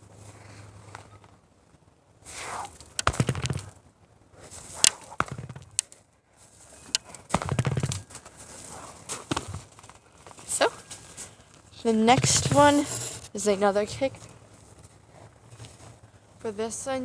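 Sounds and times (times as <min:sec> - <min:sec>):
kicks and punches on punching bag: 0:03.0 - 0:03.7, 0:05.0 - 0:05.8, 0:07.3 - 0:08.1, 0:09.3 - 0:09.7.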